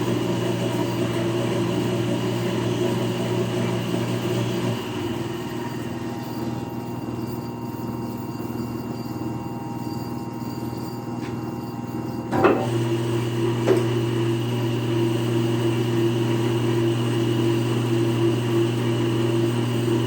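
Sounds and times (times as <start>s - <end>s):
electric motor humming: 0.0s - 7.6s, 12.3s - 20.0s.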